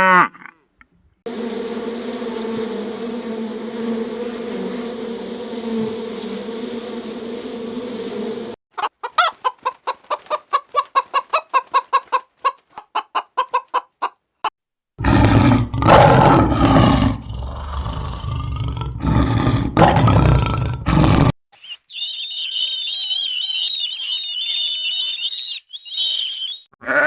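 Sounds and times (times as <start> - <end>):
chicken clucking rapidly: 8.7 - 14.5.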